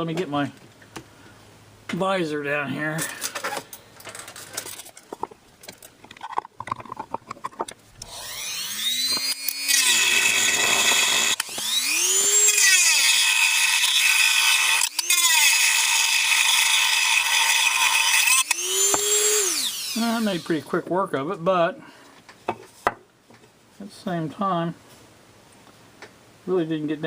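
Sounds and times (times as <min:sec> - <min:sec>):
power tool grinding: 0:06.1 - 0:20.7.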